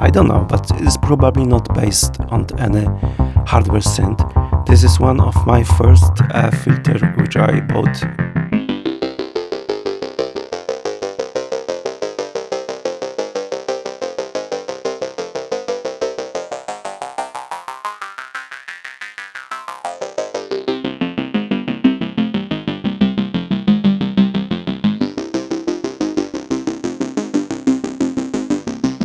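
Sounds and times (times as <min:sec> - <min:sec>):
synthesizer sequenced pattern: 0:00.0 - 0:09.1.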